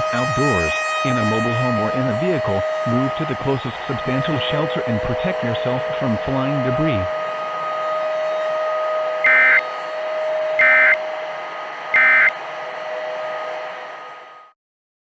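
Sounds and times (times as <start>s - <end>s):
radio static: 0.0s - 7.3s
warbling data tones: 0.0s - 11.0s, 11.9s - 14.5s
constant hum: 0.0s - 14.4s.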